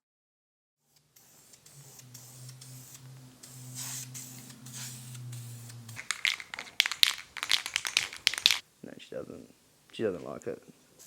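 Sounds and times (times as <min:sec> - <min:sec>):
spray nozzle hissing: 0:01.3 - 0:07.7
crinkling: 0:06.0 - 0:08.6
sharp clicks: 0:06.0 - 0:08.6.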